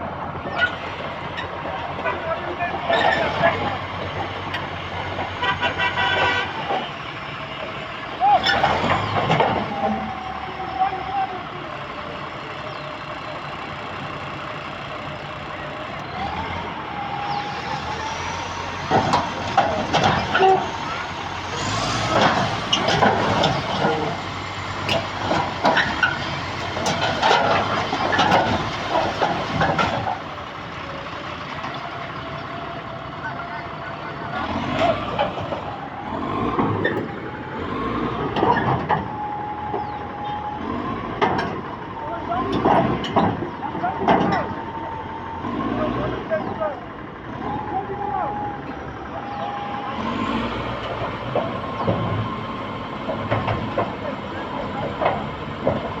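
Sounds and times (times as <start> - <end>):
heavy diesel machinery running: 0.0 - 56.0
metallic clanks and knocks: 18.8 - 20.8, 22.0 - 30.2, 42.5 - 44.6, 53.0 - 56.0.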